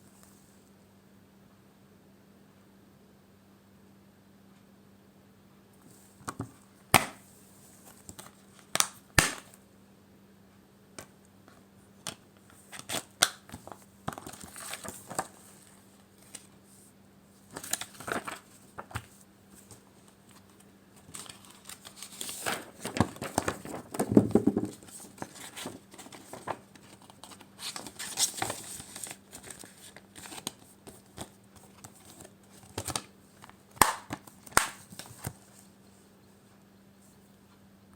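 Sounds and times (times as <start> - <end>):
plastic packaging tearing and crinkling: 21.0 - 30.6.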